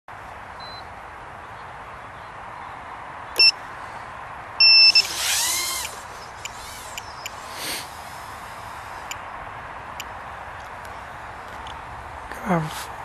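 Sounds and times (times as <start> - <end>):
buzzer beeps: 4.6 - 5.1
drone motors whining: 4.6 - 7.5
steady hiss: 5.0 - 13.0.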